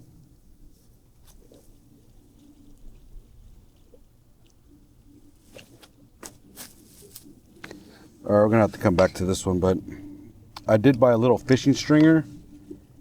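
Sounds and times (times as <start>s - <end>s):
faint low hum: 0.0s - 13.0s
light rustling: 5.3s - 13.0s.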